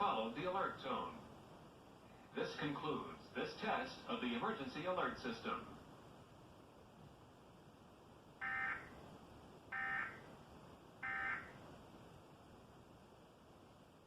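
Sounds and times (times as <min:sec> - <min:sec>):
digital data tone bursts: 0:09.7 - 0:10.2, 0:11.0 - 0:11.5.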